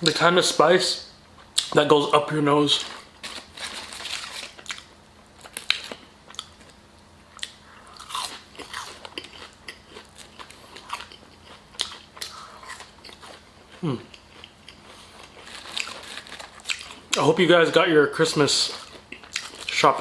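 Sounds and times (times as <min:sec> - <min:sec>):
crisp crunches: 0:02.6 - 0:06.7, 0:14.9 - 0:17.3
chewing and biting food: 0:02.8 - 0:17.2, 0:18.6 - 0:19.9.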